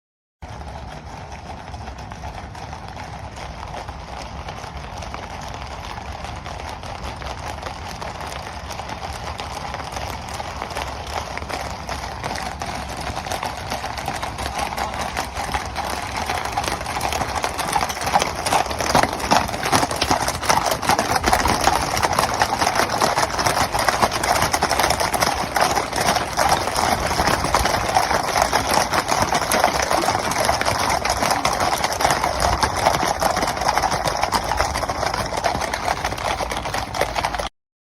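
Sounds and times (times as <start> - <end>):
horses galloping: 0.4 - 37.5.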